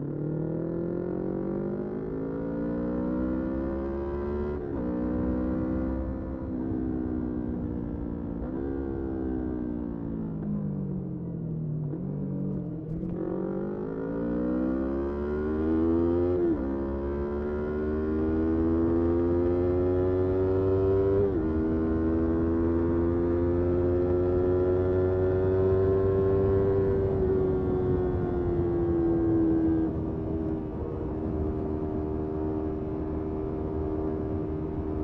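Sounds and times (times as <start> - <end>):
motorcycle engine accelerating: 11.8 - 35.0.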